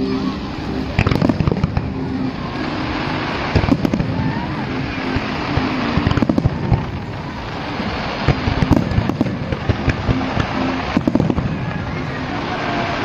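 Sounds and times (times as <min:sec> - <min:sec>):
steady rumbling: 0:00.0 - 0:13.0
fireworks bangs and crackles: 0:00.8 - 0:13.0.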